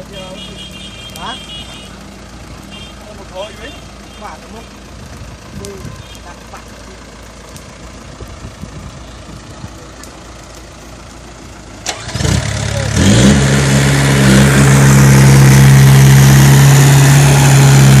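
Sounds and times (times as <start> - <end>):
heavy vehicle engine starting: 11.6 - 18.0.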